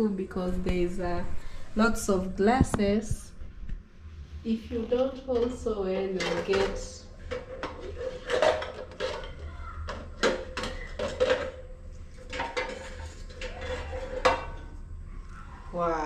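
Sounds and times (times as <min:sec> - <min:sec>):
faint steady hum: 0:00.0 - 0:16.0
cooking pots clanking: 0:05.0 - 0:14.8.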